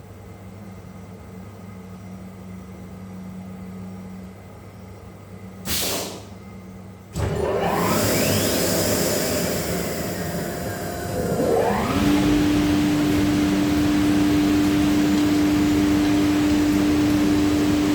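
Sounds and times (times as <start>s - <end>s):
compressed air hiss: 5.6s - 6.4s
cnc router humming: 7.2s - 17.9s
spindle whine: 7.2s - 17.9s.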